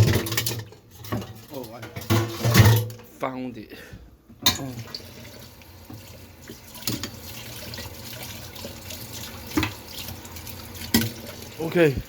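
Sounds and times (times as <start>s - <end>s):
tap running into a sink: 9.5s - 10.2s, 10.8s - 12.0s.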